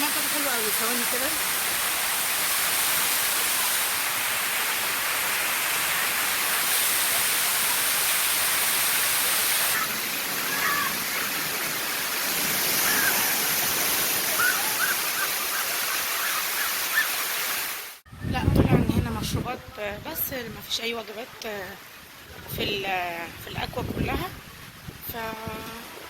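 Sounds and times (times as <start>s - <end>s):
falling and splashing water: 0.0s - 18.0s.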